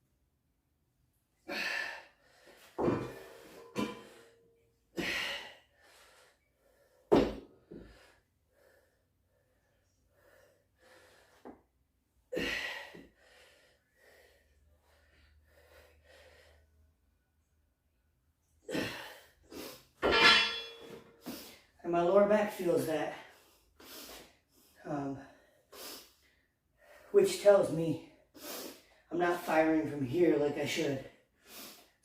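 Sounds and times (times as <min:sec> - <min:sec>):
man breathing hard: 0:12.4 - 0:16.8.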